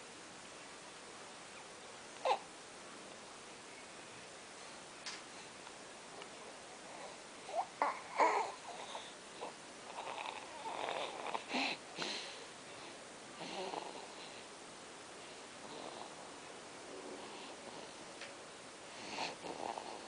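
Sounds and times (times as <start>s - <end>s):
baby snoring: 2.2s - 2.5s, 6.8s - 12.3s, 13.4s - 14.4s, 15.6s - 16.3s, 18.9s - 20.0s.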